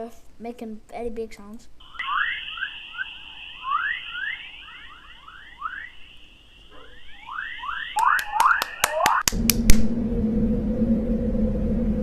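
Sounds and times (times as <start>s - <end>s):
low steady hum: 0.0s - 12.0s
quick rising chirps: 1.8s - 9.2s
thin steady whistle: 1.8s - 9.3s.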